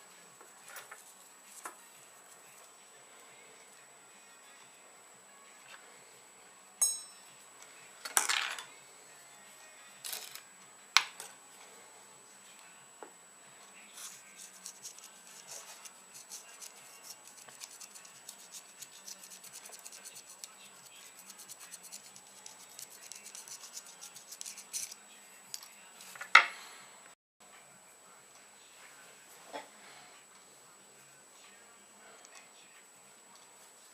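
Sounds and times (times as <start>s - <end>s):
metallic clink: 6.8s - 7.2s
hands scratching and rubbing object: 14.0s - 25.0s.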